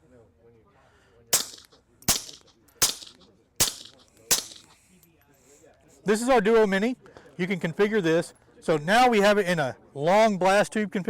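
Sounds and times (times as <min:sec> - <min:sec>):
suppressed gunshots: 0:01.3 - 0:04.8.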